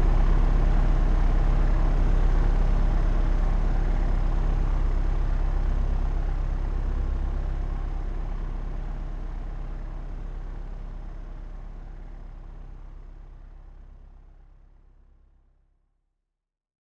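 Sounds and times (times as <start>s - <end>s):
propeller aircraft drone: 0.0s - 13.2s.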